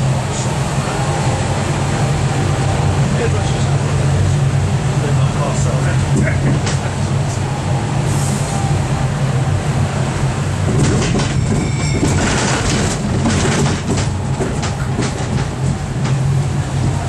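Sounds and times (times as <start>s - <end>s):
train rattling and clicking: 0.0s - 17.0s
train rumbling: 0.0s - 17.0s.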